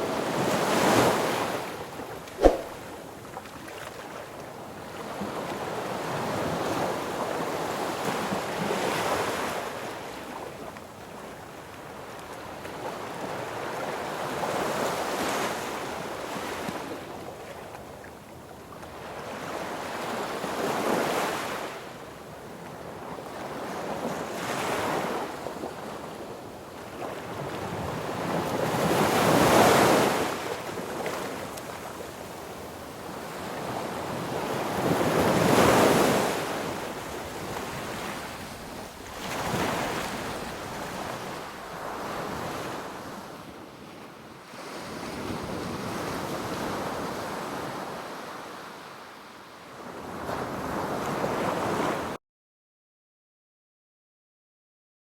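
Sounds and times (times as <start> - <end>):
sea waves breaking on beach: 2.4 - 3.0, 34.2 - 43.3.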